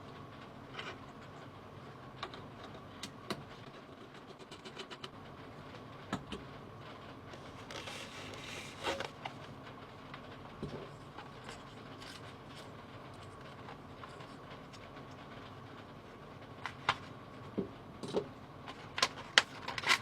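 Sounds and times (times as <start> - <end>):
steady low hum: 0.0 - 20.0
scraping rustle: 7.4 - 9.4.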